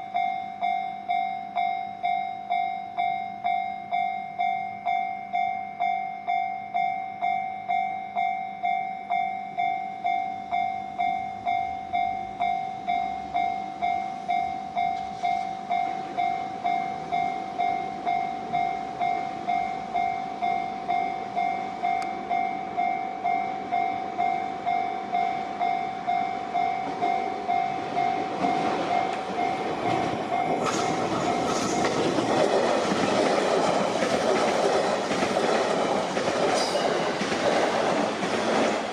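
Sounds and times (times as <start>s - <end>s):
level crossing bell ringing: 0.0s - 31.8s
train wheels clattering over rail joints: 28.3s - 38.9s.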